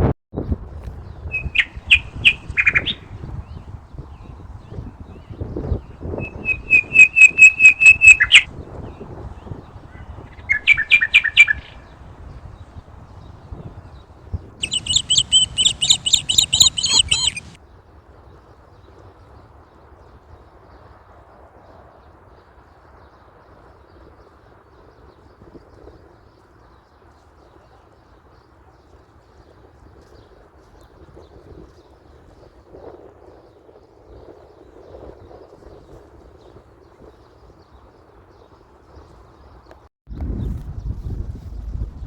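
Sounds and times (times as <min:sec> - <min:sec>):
bird chirping: 0:01.1 - 0:17.6
low background rumble: 0:40.1 - 0:42.0.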